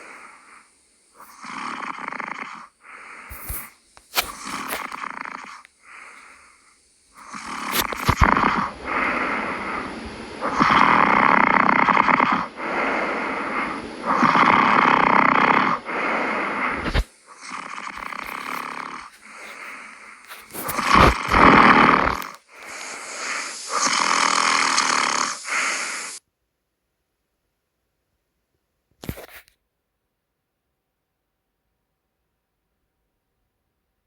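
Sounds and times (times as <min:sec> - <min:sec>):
loud snoring: 0:01.2 - 0:06.6, 0:07.2 - 0:26.2.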